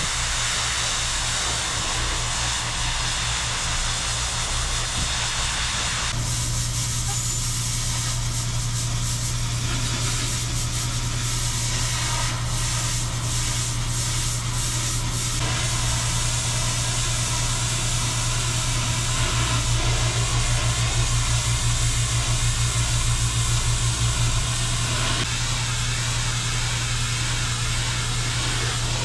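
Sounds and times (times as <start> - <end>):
pressure washer engine humming: 6.1 - 29.0.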